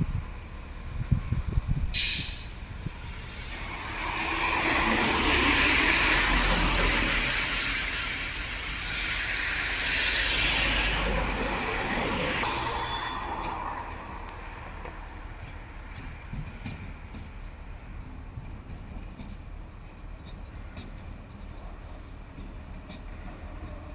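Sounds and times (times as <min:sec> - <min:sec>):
train rumbling on rails: 0:00.0 - 0:23.9
air hiss: 0:02.0 - 0:06.2.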